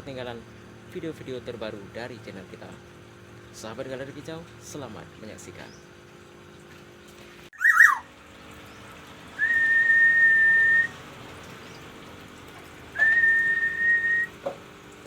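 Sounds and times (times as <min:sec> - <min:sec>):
person whistling: 0:09.4 - 0:10.9, 0:13.0 - 0:14.3.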